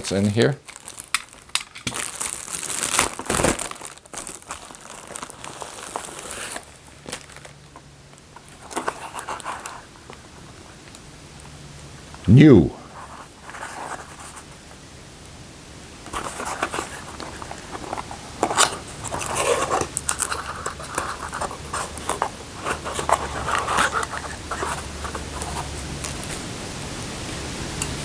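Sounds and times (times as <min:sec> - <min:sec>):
packaging rustling and clicking: 0:00.0 - 0:11.0, 0:16.1 - 0:26.4.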